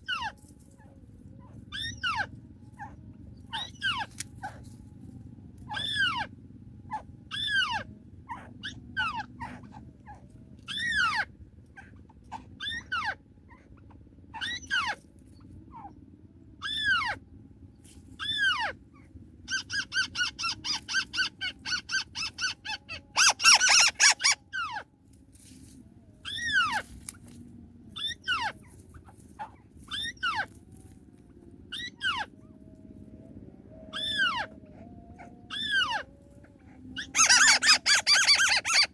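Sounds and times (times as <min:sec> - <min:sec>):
harsh bird chatter: 0:19.5 - 0:24.4, 0:37.0 - 0:38.9
fast run of bird notes: 0:37.0 - 0:38.9
bird calling falling notes: 0:37.1 - 0:38.9.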